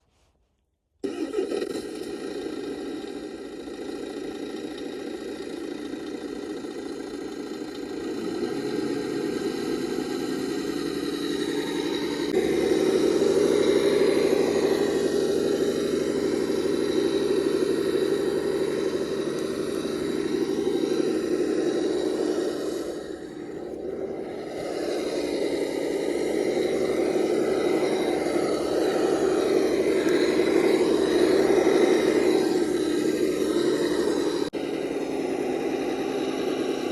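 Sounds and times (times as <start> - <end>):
electric motor and gears whirring: 0.0 - 36.9
engine idling: 0.0 - 36.9.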